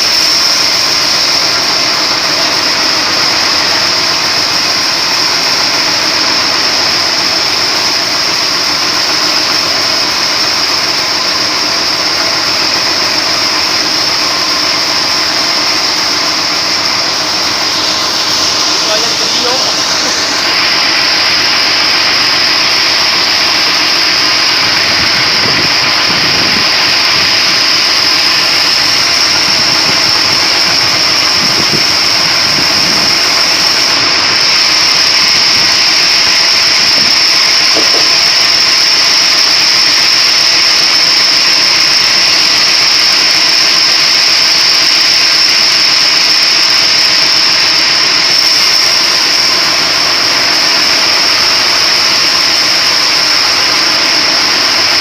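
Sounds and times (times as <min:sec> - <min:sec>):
splitting machine whining: 0:00.0 - 0:55.0.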